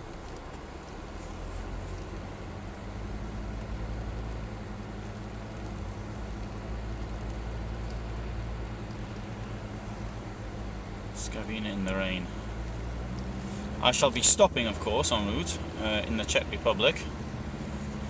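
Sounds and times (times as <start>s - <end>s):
car engine hum: 0.0s - 18.0s
tyres hissing on wet road: 12.0s - 18.0s.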